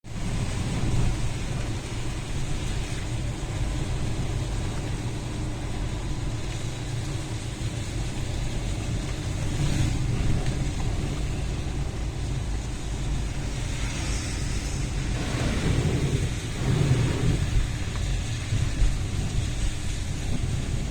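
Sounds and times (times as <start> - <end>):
strong wind on microphone: 7.9 - 20.9.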